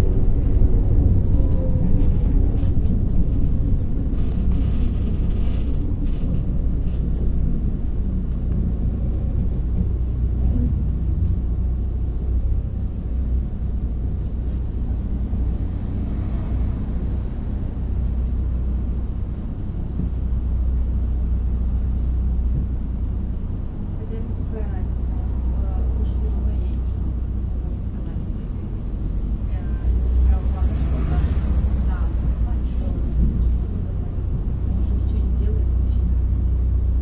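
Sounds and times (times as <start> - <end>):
diesel engine drone: 0.0 - 37.0
road noise: 0.0 - 37.0.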